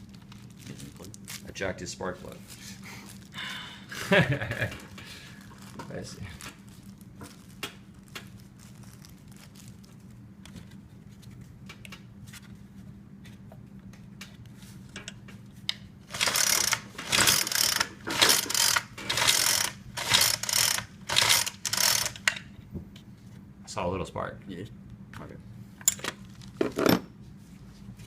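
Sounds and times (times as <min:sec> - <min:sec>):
recoil starter rope pulled: 0:16.1 - 0:22.3.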